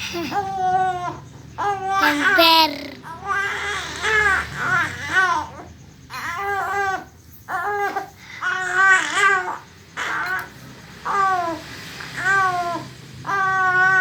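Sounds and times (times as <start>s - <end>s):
young child crying: 1.6s - 3.2s.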